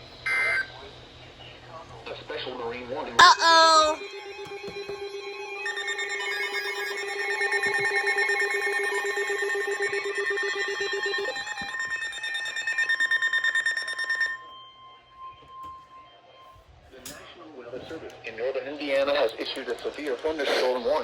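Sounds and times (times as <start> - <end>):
emergency alert alarm tones: 0.2 - 0.7, 3.2 - 16.7.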